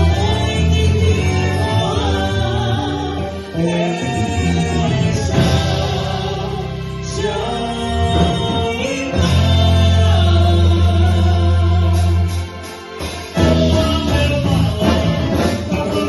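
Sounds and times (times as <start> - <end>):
band music with group singing: 0.0 - 16.0.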